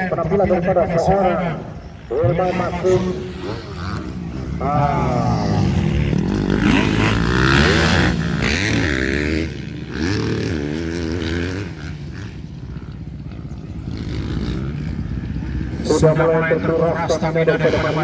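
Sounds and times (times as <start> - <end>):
motorcycle engines revving: 0.0 - 18.0.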